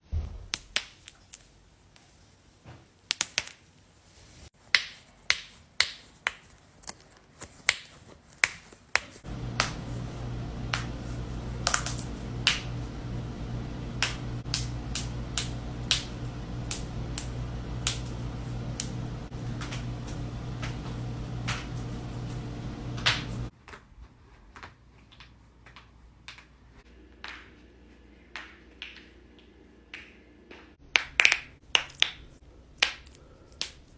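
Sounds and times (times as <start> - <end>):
steady low hum: 9.2 - 23.5.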